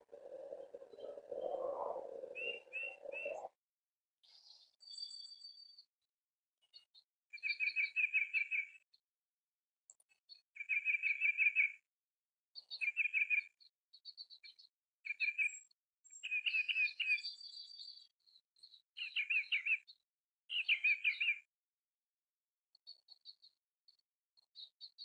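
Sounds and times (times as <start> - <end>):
songbirds trilling: 0.0 - 3.5.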